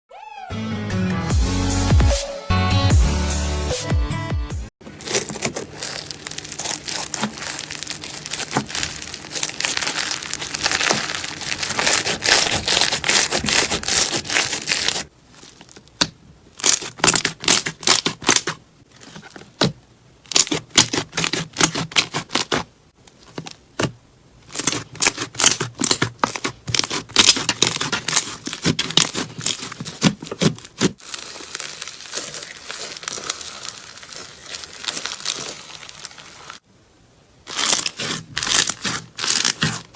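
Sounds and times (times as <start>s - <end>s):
slime squelching with air bubbles popping: 5.0s - 15.1s, 29.1s - 36.6s.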